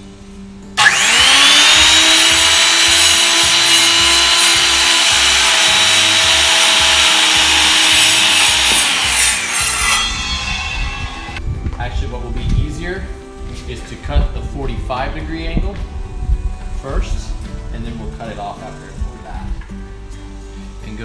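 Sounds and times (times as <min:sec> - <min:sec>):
power saw cutting wood: 0:00.8 - 0:11.4.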